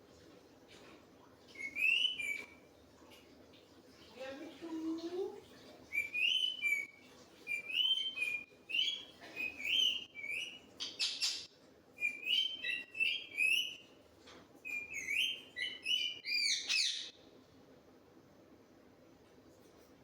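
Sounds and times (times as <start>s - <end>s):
parrot chirping and whistling: 1.6s - 2.6s, 5.9s - 11.4s, 12.0s - 13.8s, 14.6s - 17.1s.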